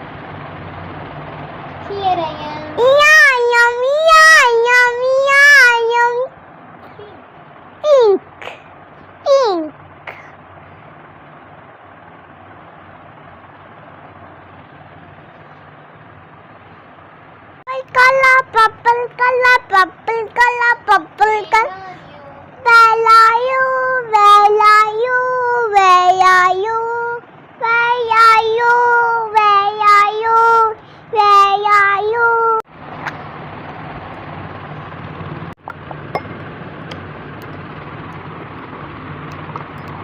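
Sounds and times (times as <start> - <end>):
background hum and hiss: 0.0 - 40.0
child singing: 1.9 - 6.3, 7.9 - 8.2, 17.7 - 32.6
low droning tone: 32.8 - 40.0.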